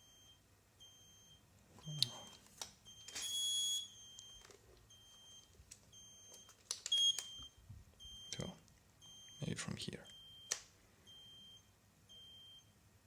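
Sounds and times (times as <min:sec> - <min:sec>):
high-pitched transmitter beeps: 0:00.9 - 0:02.4.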